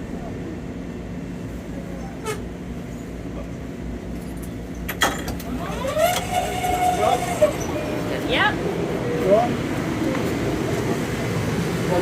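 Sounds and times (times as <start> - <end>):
train rumbling: 0.0 - 12.0
train squeal: 5.7 - 8.2.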